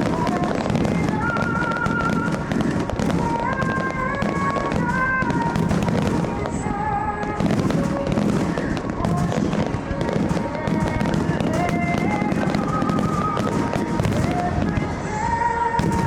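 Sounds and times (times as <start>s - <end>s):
fireworks bursting and crackling: 0.0s - 16.0s
melodic music: 0.0s - 16.0s.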